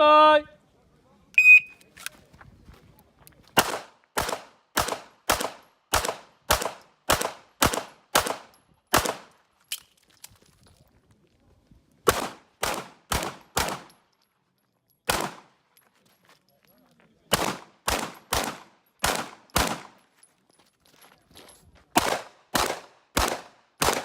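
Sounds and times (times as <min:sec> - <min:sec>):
rapid gunshots: 0:03.6 - 0:08.4, 0:12.1 - 0:13.9, 0:17.3 - 0:20.0, 0:22.0 - 0:24.0.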